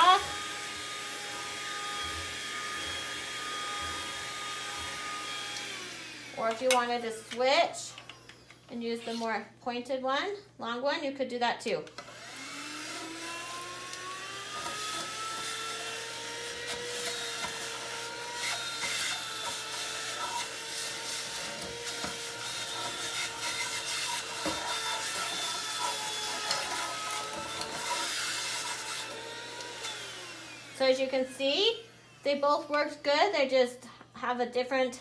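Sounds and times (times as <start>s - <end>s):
handheld vacuum motor whine: 0.0s - 9.4s, 12.0s - 33.2s
nozzle rubbing and scraping: 8.7s - 9.4s.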